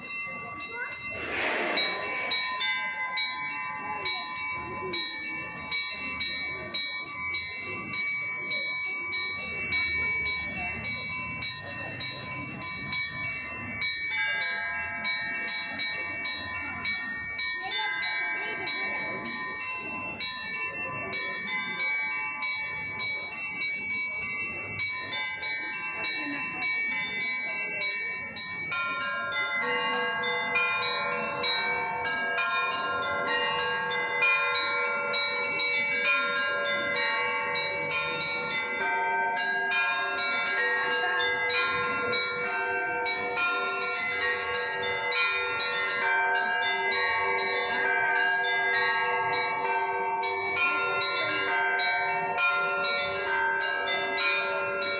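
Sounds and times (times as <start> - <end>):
church bells ringing a peal: 0.0 - 54.9.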